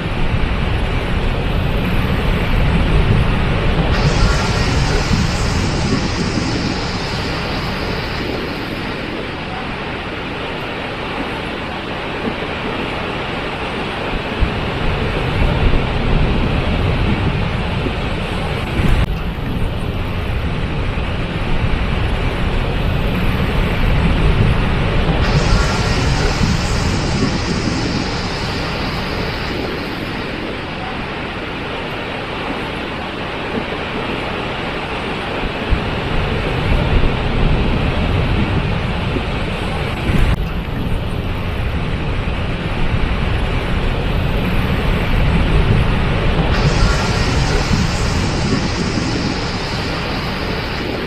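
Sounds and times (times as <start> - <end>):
waterfall rushing: 46.5 - 51.0.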